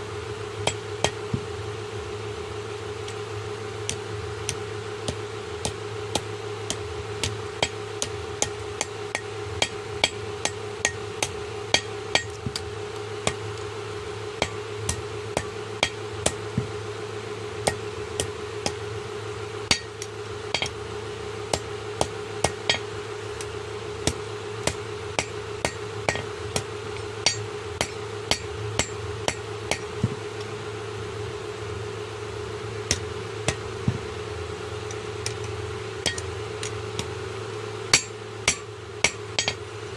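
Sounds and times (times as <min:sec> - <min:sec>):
steady machine hum: 0:00.0 - 0:39.9
hammer striking metal: 0:00.6 - 0:01.2, 0:07.6 - 0:12.4, 0:14.4 - 0:16.4, 0:19.7 - 0:20.8, 0:24.1 - 0:26.3, 0:27.2 - 0:30.0, 0:36.0 - 0:36.3, 0:38.0 - 0:39.6.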